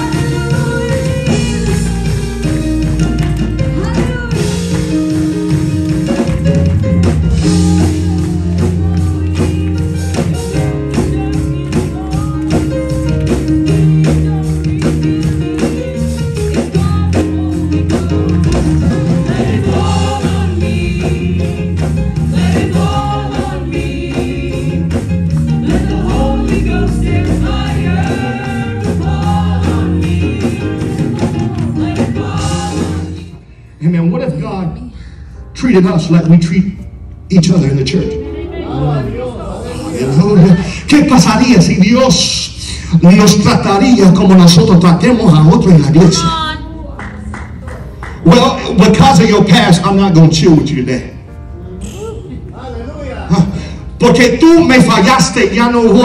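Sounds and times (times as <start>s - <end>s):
people singing: 0.0s - 2.6s, 7.4s - 33.4s
drums keeping a beat: 0.0s - 33.2s
bass guitar: 0.0s - 33.3s
gospel band playing: 0.0s - 56.0s.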